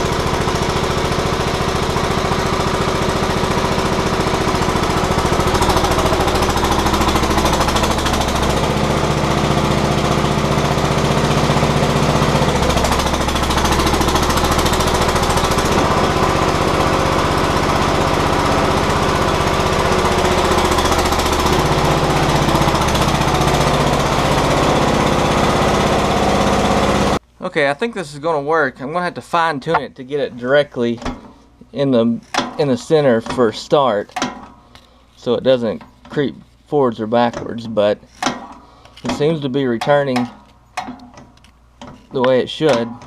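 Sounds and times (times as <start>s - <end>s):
backhoe engine running: 0.0s - 27.2s.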